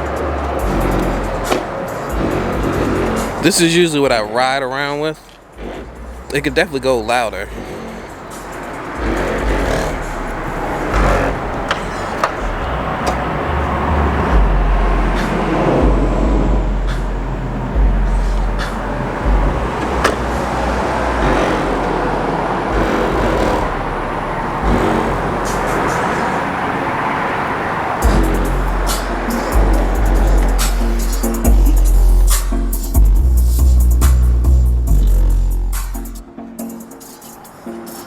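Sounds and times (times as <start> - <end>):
deep subwoofer bass: 0.0 - 1.5, 2.2 - 3.4, 9.0 - 11.5, 12.6 - 25.4, 28.0 - 36.2.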